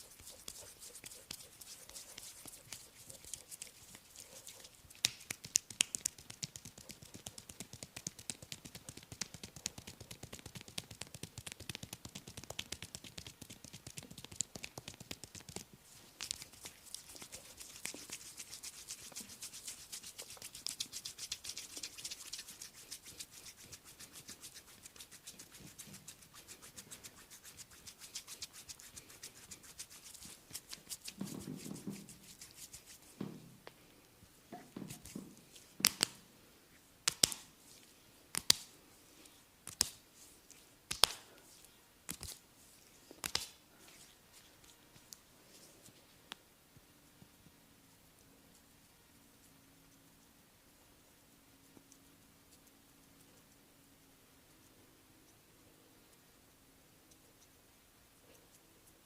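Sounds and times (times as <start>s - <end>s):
hands rubbing hair: 0.0s - 33.4s, 34.6s - 36.2s, 37.0s - 46.0s.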